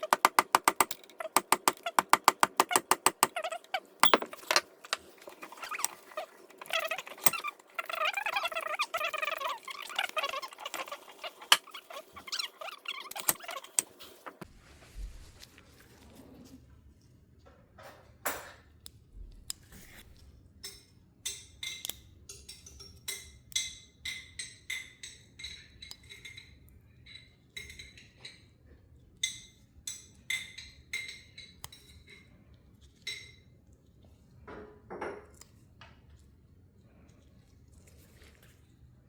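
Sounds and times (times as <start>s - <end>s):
light metallic clinks: 4.0s - 4.6s
soft rustle or scrape: 14.0s - 17.2s, 36.8s - 39.0s.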